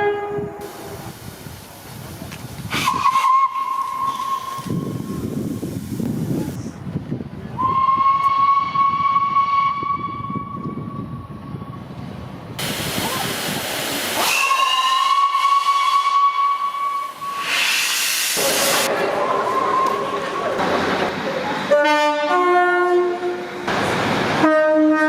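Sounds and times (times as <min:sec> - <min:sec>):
steam hissing: 0:00.6 - 0:06.6, 0:12.6 - 0:18.9
steam locomotive whistle: 0:02.7 - 0:05.2, 0:07.6 - 0:11.1, 0:14.2 - 0:20.5, 0:21.7 - 0:23.4, 0:24.4 - 0:25.0.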